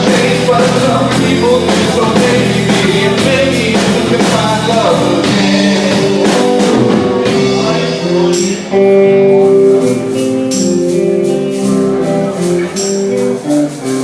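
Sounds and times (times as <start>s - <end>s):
live band playing instrumental: 0.0s - 14.0s
tambourine striking and shaking: 10.0s - 14.0s.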